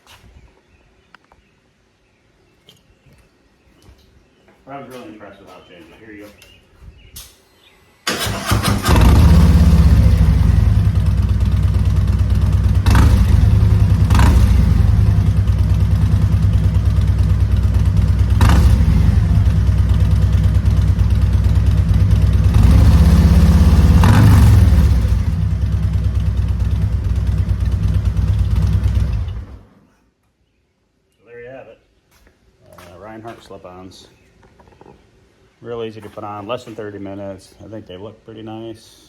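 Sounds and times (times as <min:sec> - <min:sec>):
motorcycle engine starting: 0:08.0 - 0:29.9
motorcycle engine revving: 0:08.1 - 0:29.7
motorcycle engine idling: 0:08.3 - 0:29.7.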